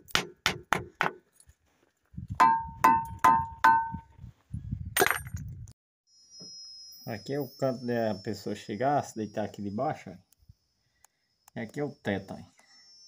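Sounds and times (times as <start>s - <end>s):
ringing rock strikes: 2.4s - 4.0s.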